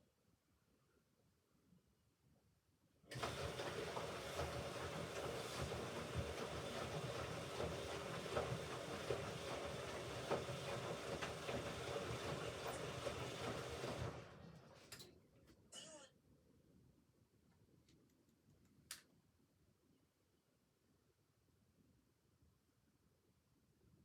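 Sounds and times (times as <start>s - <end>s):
washing machine rushing: 3.1s - 14.8s.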